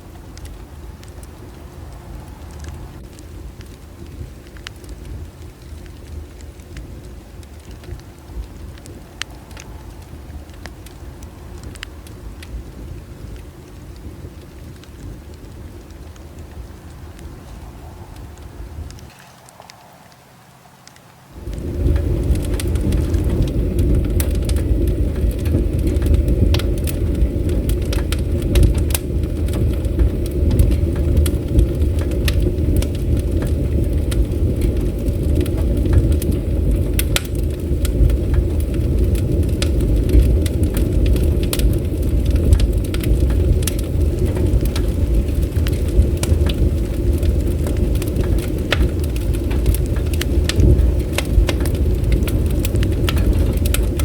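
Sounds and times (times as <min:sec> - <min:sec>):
fire pops and snaps: 0:00.0 - 0:20.2, 0:20.8 - 0:54.0
bonfire crackling: 0:00.0 - 0:54.0
low rumble: 0:21.4 - 0:54.0.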